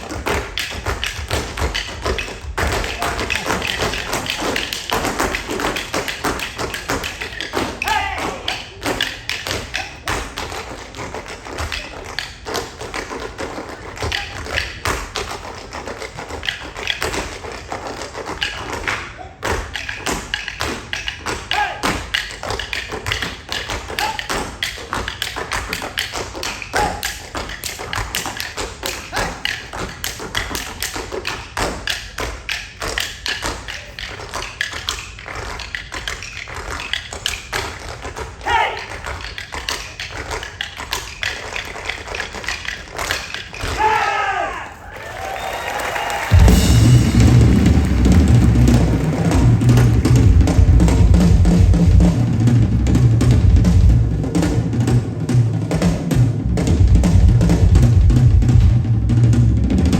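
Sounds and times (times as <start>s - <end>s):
tap shoes beating rhythms: 0.0s - 59.9s
heavy stomps and thuds: 46.3s - 59.9s.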